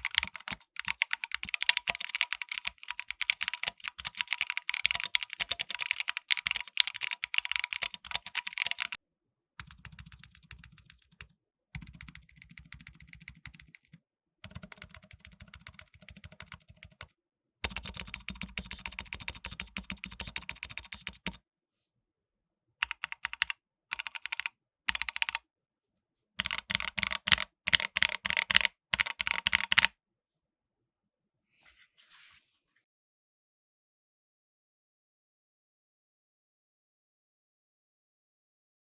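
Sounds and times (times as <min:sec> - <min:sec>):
mechanical keyboard typing: 0:00.0 - 0:09.0, 0:09.6 - 0:17.1, 0:17.7 - 0:21.4, 0:22.8 - 0:25.4, 0:26.4 - 0:29.9.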